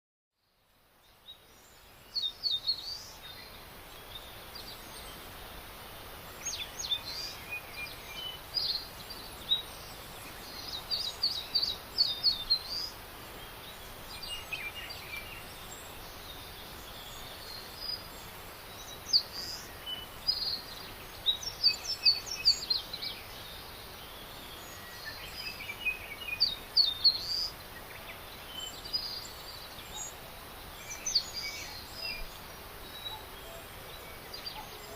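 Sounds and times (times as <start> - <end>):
background hiss: 0.4 - 34.9
birds chirping: 1.0 - 34.9.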